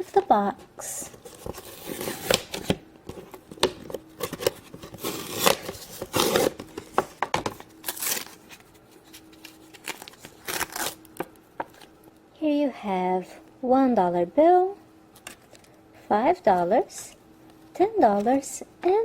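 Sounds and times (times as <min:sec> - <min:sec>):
packaging crinkling and tearing: 0:01.2 - 0:11.9.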